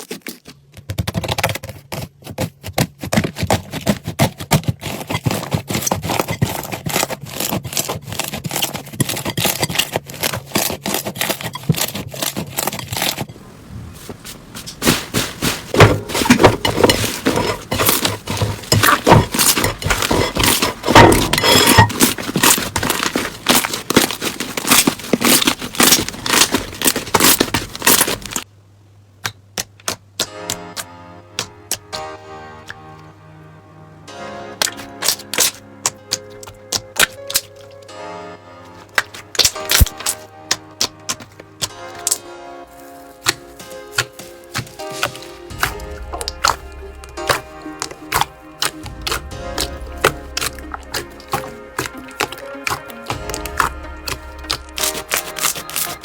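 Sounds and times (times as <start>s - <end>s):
slime crackling and popping: 14.2s - 28.4s, 42.8s - 56.0s.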